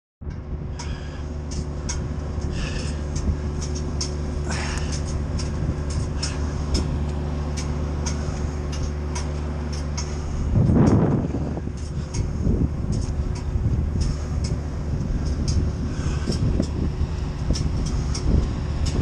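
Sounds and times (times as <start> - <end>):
wood chipper and tractor running: 0.3 - 19.0
sharp ticks and clacks: 11.8 - 19.0.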